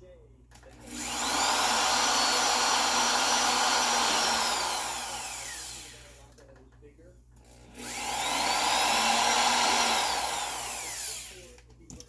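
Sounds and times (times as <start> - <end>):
power tool motor whining: 0.8 - 6.2, 7.6 - 11.5.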